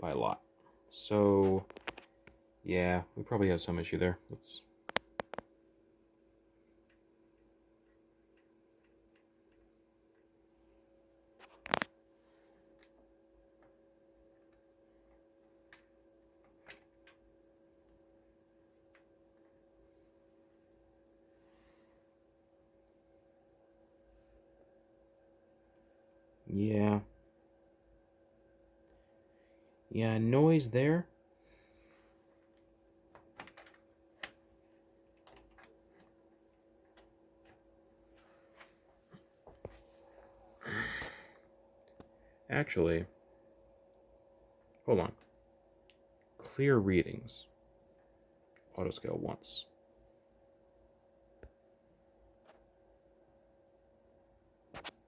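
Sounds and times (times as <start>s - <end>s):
faint steady hum: 0.0s - 55.0s
light clicks and taps: 4.8s - 5.5s.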